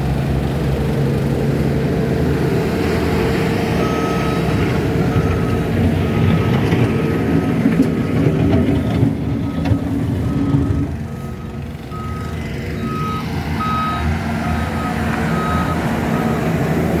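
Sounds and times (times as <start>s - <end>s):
diesel engine running: 0.0s - 17.0s
reversing alarm beeping: 3.8s - 6.3s, 9.4s - 16.6s.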